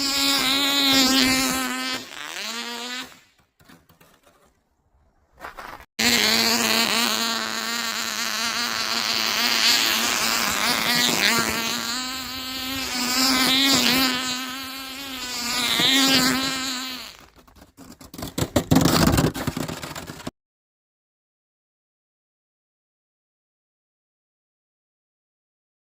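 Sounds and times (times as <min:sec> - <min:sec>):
model engine high buzz: 0:00.0 - 0:03.4, 0:06.0 - 0:17.3.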